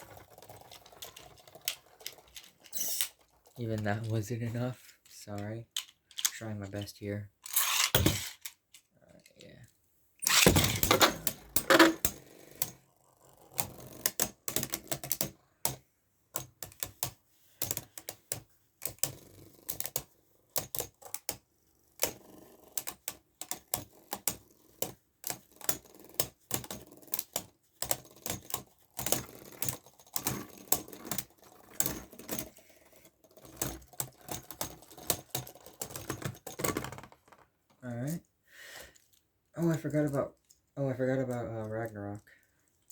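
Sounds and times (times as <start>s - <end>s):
plastic clicks and clacks: 0.0s - 12.8s, 33.2s - 38.2s.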